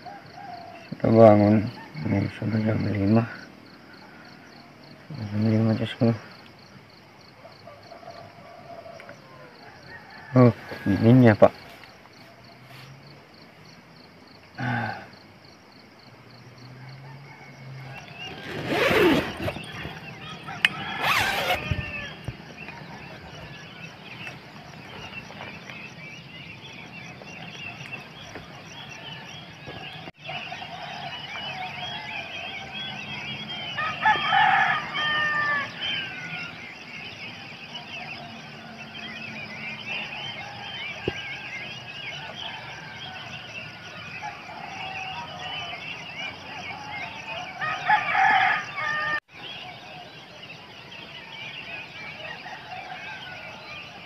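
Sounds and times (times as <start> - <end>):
rooster crowing: 7.6 - 11.8, 16.8 - 25.0, 27.6 - 36.7, 40.0 - 49.3, 52.0 - 54.0
small birds chirping: 17.6 - 54.0.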